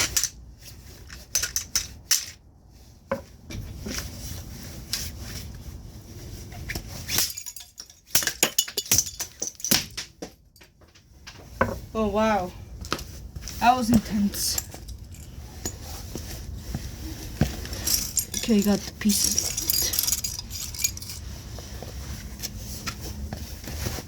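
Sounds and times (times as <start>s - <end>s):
sharp clinking impacts on toy: 17.7s - 21.2s.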